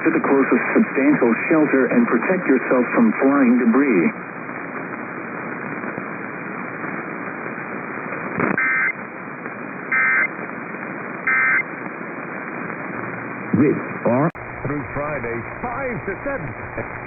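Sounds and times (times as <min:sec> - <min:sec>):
radio static hiss: 0:00.0 - 0:17.0
digital data tone bursts: 0:08.6 - 0:08.9, 0:09.9 - 0:10.3, 0:11.3 - 0:11.6.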